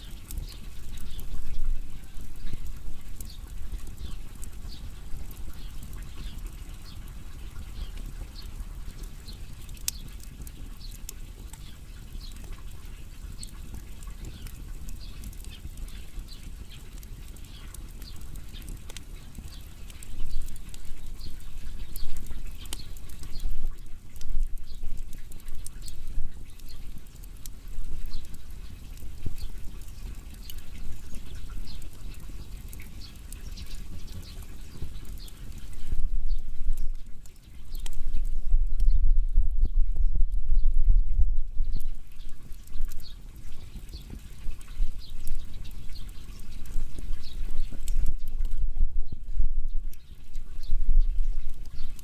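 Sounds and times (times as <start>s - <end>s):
fire low rumble: 0.0s - 52.0s
wood fire crackling and popping: 0.0s - 52.0s.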